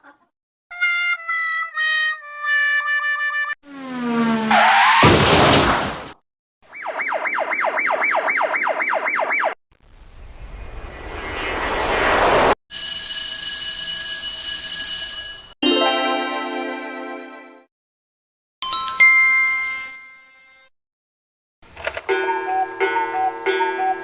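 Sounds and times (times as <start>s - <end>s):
siren yelp: 6.7s - 9.6s
rising whoosh: 9.9s - 12.6s
pitched glide with noisy burst: 10.0s - 12.6s.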